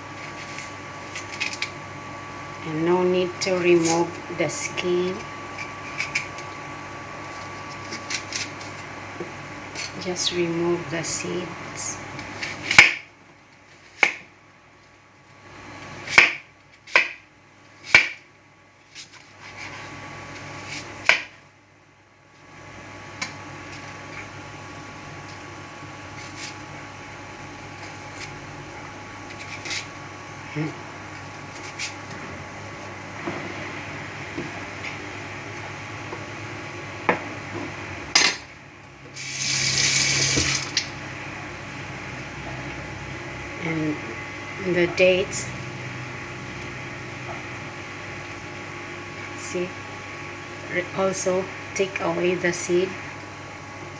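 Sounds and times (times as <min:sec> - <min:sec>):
kitchen tap running: 0:39.1 - 0:40.9.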